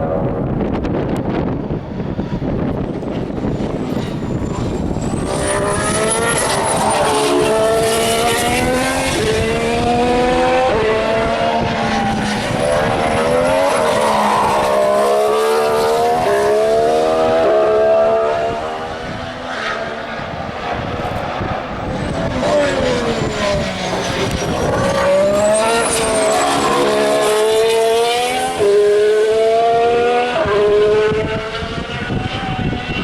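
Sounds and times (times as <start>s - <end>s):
racing car engine with gear changes: 0.0s - 33.0s.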